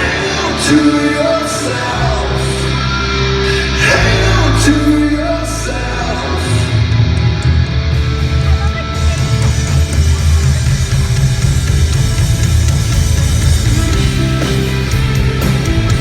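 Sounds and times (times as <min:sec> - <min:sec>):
bass: 0:00.0 - 0:16.0
distorted electric guitars: 0:00.0 - 0:16.0
drums: 0:00.0 - 0:16.0.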